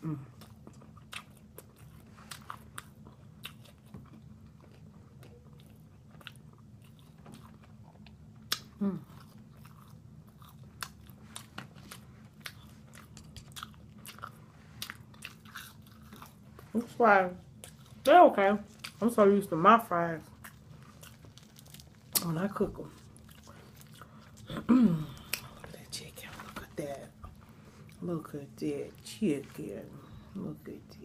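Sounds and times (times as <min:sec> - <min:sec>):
person chewing crunchy food: 0:00.1 - 0:16.8, 0:17.5 - 0:18.1, 0:18.7 - 0:19.0, 0:20.2 - 0:22.3, 0:22.9 - 0:25.8.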